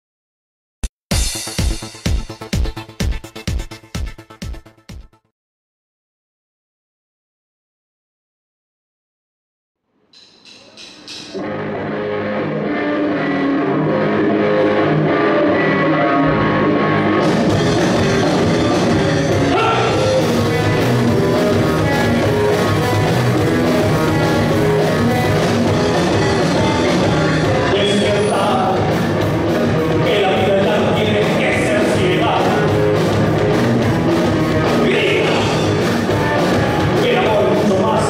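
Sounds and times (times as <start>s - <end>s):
rock band playing live: 11.1s - 38.0s.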